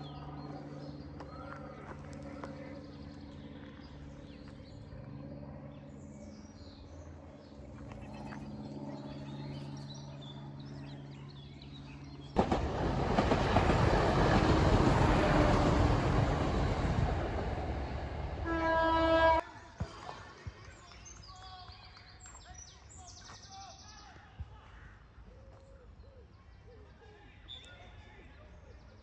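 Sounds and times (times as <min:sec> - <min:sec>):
faint birdsong: 0:00.0 - 0:19.8, 0:20.4 - 0:29.0
passenger train passing: 0:12.2 - 0:19.5.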